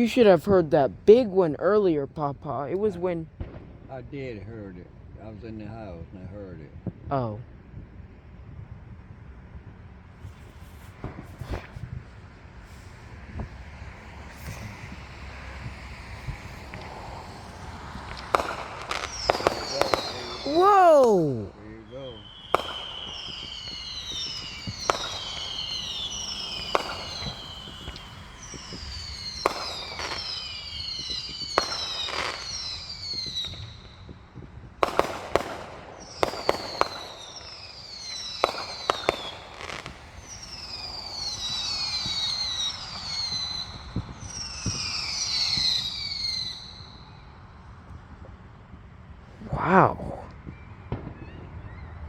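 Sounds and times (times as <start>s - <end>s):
fireworks bangs and pops: 3.3s - 4.1s, 6.8s - 47.0s, 47.6s - 52.0s
fireworks whistling: 10.1s - 47.7s.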